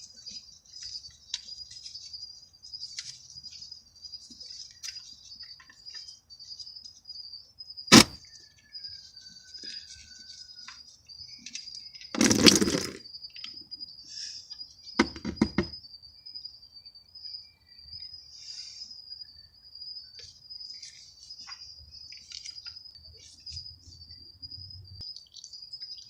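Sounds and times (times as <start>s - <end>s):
crickets trilling: 0.0s - 26.0s
sharp knocks: 15.0s - 15.8s.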